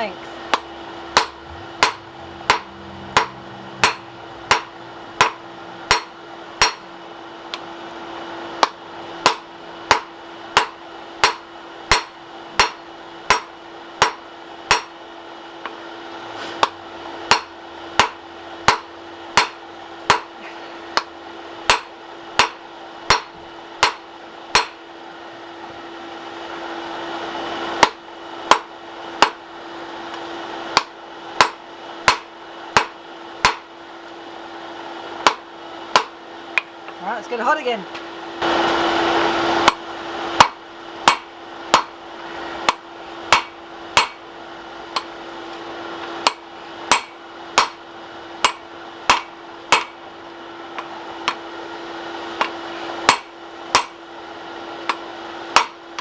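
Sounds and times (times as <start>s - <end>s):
hammer blows on hot steel: 0.5s - 6.9s, 21.7s - 24.8s.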